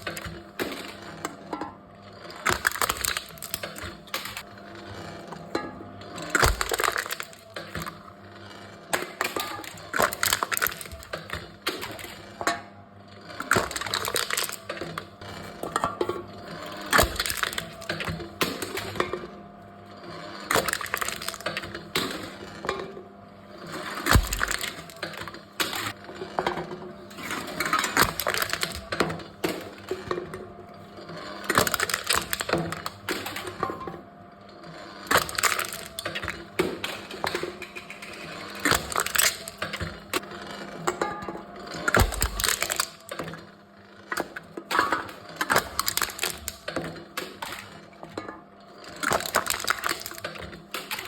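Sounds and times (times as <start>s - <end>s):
cans crushing in machine: 0.0s - 19.3s, 20.0s - 34.0s, 34.6s - 51.0s.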